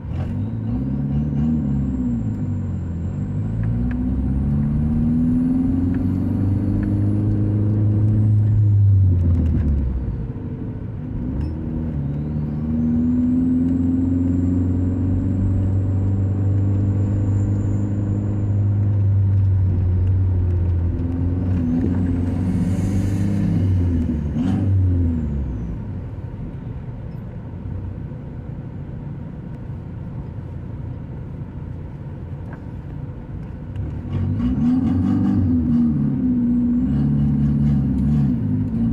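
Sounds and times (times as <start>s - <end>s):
vehicle engine revving: 0.0s - 10.1s, 11.2s - 25.8s, 33.8s - 38.9s.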